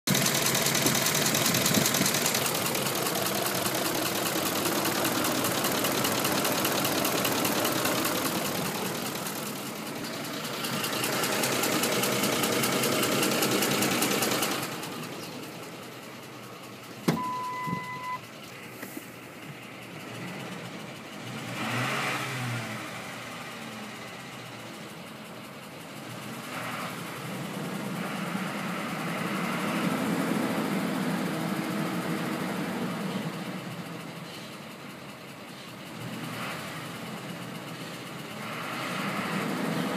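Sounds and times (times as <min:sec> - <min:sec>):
engine ticking knock: 0:00.1 - 0:15.7
truck engine running: 0:00.1 - 0:39.9
short beep: 0:17.1 - 0:18.2.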